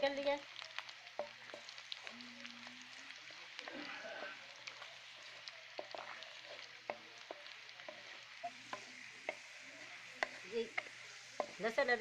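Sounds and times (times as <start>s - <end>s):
food sizzling in oil: 0.0s - 12.0s.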